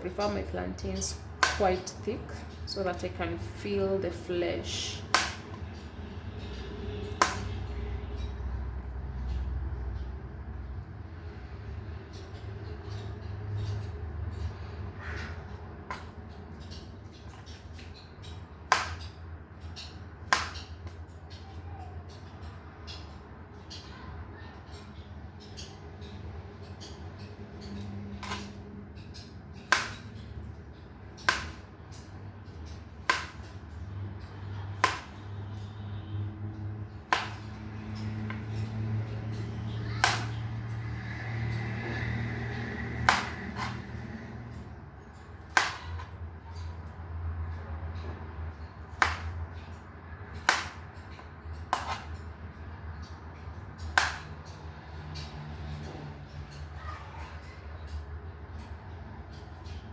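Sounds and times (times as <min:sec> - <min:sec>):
knife chopping on cutting board: 0:01.4 - 0:01.6, 0:05.1 - 0:05.6, 0:07.2 - 0:07.6, 0:18.7 - 0:19.1, 0:20.3 - 0:20.7, 0:28.2 - 0:28.6, 0:29.7 - 0:30.0, 0:31.3 - 0:31.6, 0:33.1 - 0:33.5, 0:34.8 - 0:35.2, 0:37.1 - 0:37.6, 0:40.0 - 0:40.4, 0:42.8 - 0:44.0, 0:45.5 - 0:46.1, 0:48.9 - 0:49.3, 0:50.4 - 0:50.8, 0:51.7 - 0:52.2
knife cutting on cutting board: 0:43.0 - 0:44.0.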